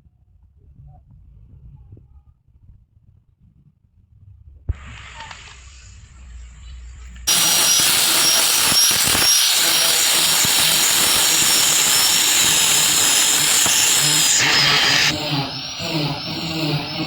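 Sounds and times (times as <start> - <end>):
angle grinder sanding: 7.3 - 17.0.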